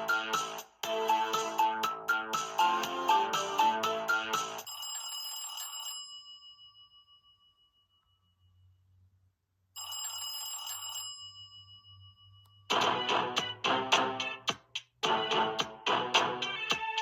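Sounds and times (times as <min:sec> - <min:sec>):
bell-like phone ringtone: 0:00.0 - 0:08.6, 0:09.8 - 0:12.7.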